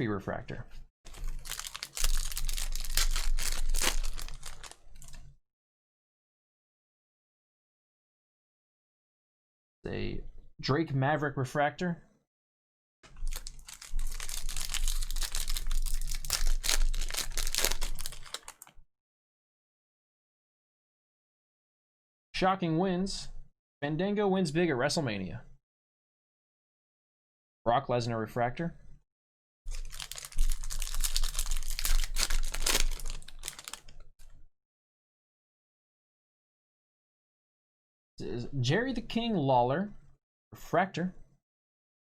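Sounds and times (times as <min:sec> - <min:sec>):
trading cards clicking and rustling: 0:01.1 - 0:05.2, 0:13.2 - 0:18.7, 0:29.7 - 0:33.9
foil wrapper tearing and crinkling: 0:01.1 - 0:05.3, 0:13.1 - 0:18.8, 0:29.7 - 0:34.0.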